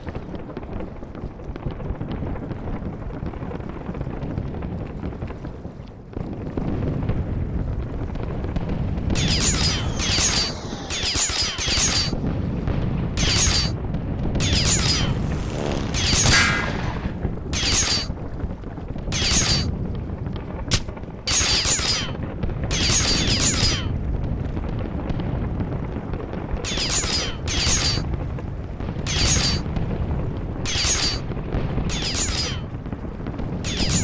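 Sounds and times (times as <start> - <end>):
low rumble of explosions: 0.0 - 9.2, 23.9 - 26.6
gunfire bursts: 14.4 - 18.1.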